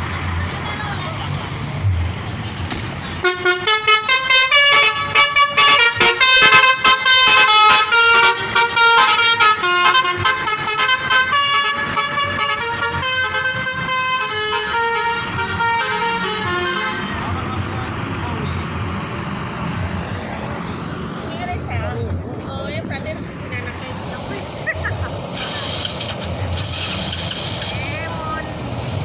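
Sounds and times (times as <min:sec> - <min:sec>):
musical air horn playing a tune: 0:03.2 - 0:17.2.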